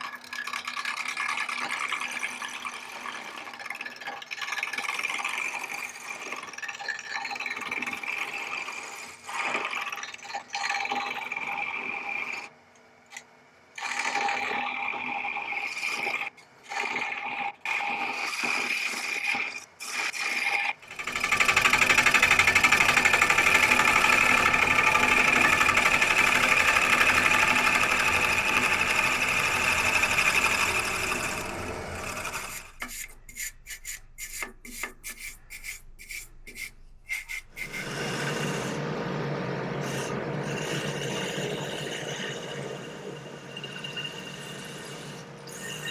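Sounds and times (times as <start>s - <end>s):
wood lathe motor whine: 20.8s - 33.5s
tool scraping wood: 20.9s - 38.8s
rapid ticking: 21.0s - 31.3s.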